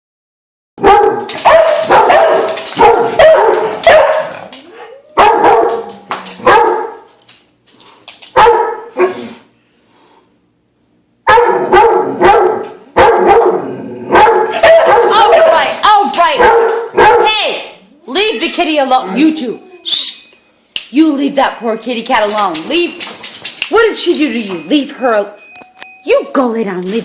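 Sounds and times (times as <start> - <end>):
dogs barking: 0.8 - 4.6, 5.2 - 7.1, 8.3 - 9.4, 11.2 - 17.5.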